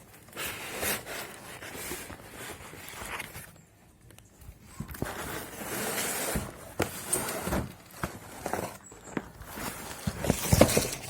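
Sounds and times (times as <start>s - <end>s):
cardboard box rustling and scraping: 0.0s - 3.5s, 4.7s - 11.0s.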